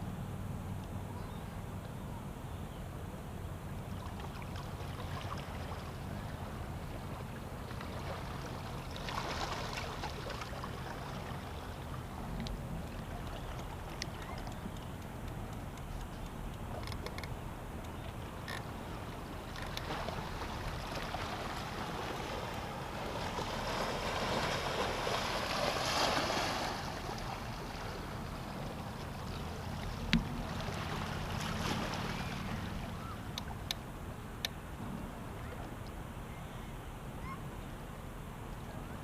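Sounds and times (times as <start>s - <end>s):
waves washing against pier: 17.6s - 34.0s.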